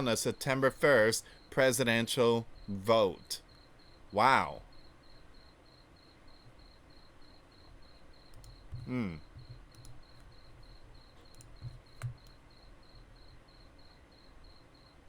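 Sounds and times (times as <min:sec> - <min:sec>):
faint high-pitched chirps: 0:00.0 - 0:15.0
person vocal sound: 0:08.8 - 0:09.2.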